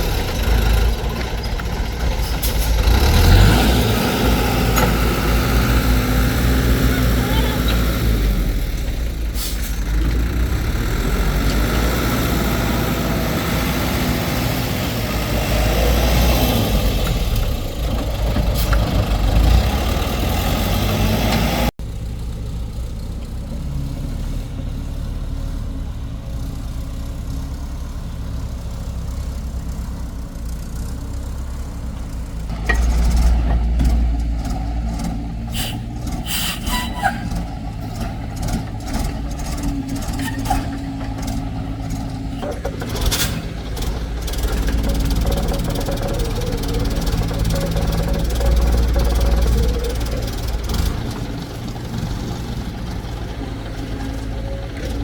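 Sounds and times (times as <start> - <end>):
heavy machine engine running: 0.0 - 21.7, 31.3 - 55.0
sharp knocks and clatter: 32.0 - 35.4, 37.3 - 55.0.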